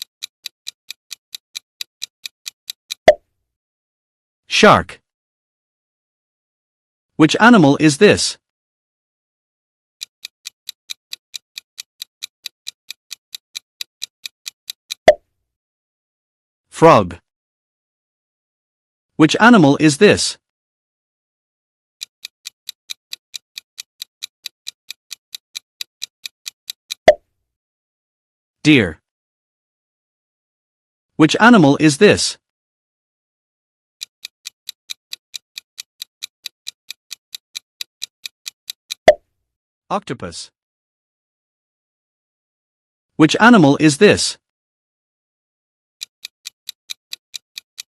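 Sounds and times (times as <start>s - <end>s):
clock-like ticking: 0.0s - 3.2s, 10.0s - 15.2s, 22.0s - 27.2s, 34.0s - 39.2s, 46.0s - 47.9s.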